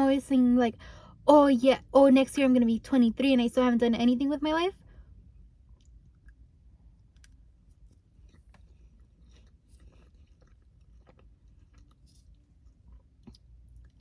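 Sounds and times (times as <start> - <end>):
person chewing food: 5.4 - 14.0.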